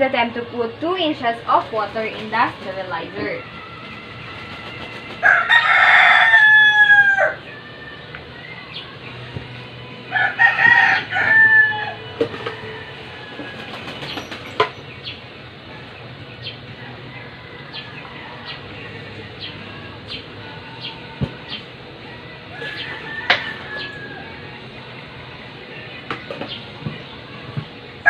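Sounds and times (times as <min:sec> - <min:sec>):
rooster crowing: 0:03.3 - 0:08.1, 0:10.1 - 0:14.0, 0:16.7 - 0:19.3, 0:22.5 - 0:24.6.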